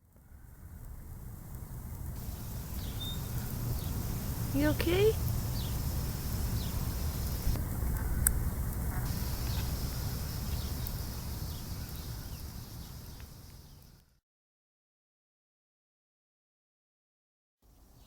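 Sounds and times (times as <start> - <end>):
steady low rumble: 0.2 - 13.6
small bird chirping: 2.2 - 8.3, 9.1 - 14.0.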